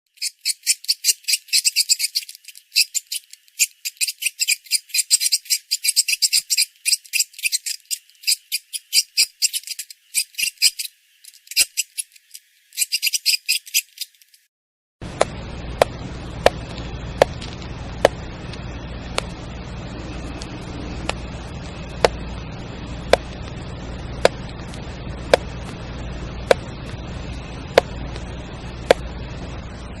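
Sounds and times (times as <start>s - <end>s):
rapid high-pitched chirping: 0.1s - 14.4s
sharp clicks: 0.1s - 14.4s
steady low hum: 15.0s - 30.0s.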